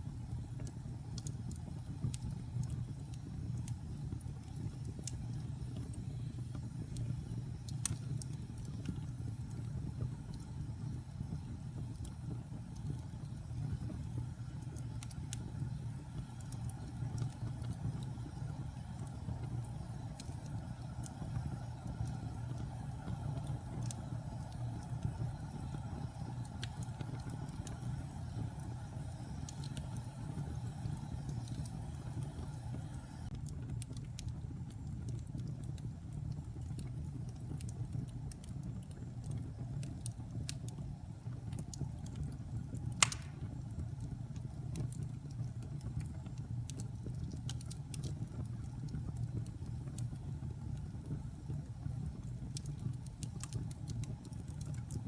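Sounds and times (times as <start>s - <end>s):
fire crackling: 0.0s - 55.0s
wood fire rumbling: 0.0s - 55.0s
sharp pop from fire: 43.0s - 43.6s.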